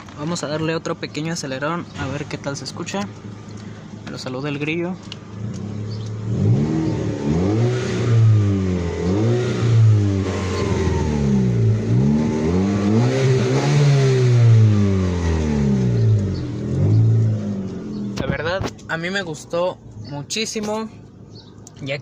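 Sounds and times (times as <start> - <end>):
car engine revving: 5.1 - 20.1.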